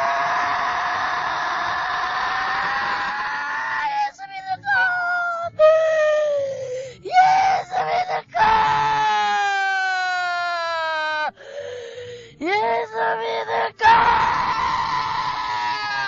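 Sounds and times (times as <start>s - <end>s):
person wailing: 4.9s - 11.4s, 12.4s - 16.0s.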